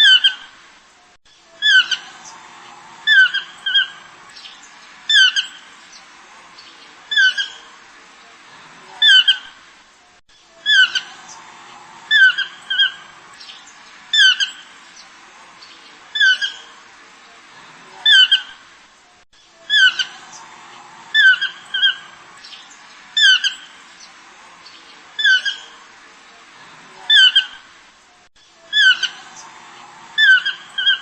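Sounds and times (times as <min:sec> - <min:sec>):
steady background hiss: 0:00.0 - 0:31.0
animal squawking call: 0:01.6 - 0:02.0, 0:10.6 - 0:11.2, 0:19.7 - 0:20.2, 0:27.1 - 0:27.6, 0:28.7 - 0:29.3, 0:30.2 - 0:31.0.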